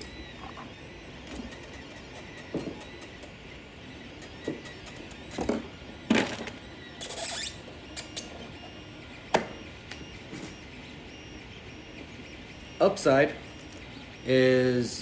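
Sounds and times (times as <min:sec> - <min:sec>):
sharp knocks and clicks: 0:00.0 - 0:03.4, 0:04.2 - 0:07.2, 0:09.3 - 0:10.1.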